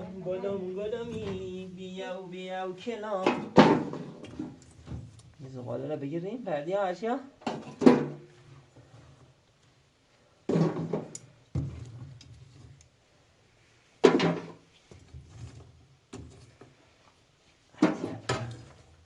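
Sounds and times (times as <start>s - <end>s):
knocks and clunks: 0.9s - 1.6s, 3.2s - 5.1s, 7.4s - 8.3s.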